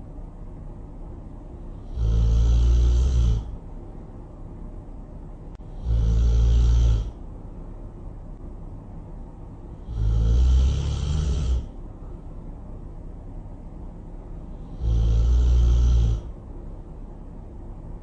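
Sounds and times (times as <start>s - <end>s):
loud snoring: 1.7s - 3.6s, 5.6s - 7.2s, 9.8s - 11.8s, 14.5s - 16.4s.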